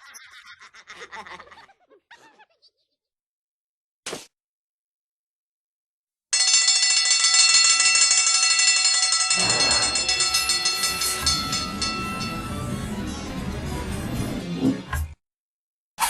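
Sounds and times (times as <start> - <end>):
fast-ringing bell: 6.4 - 13.3.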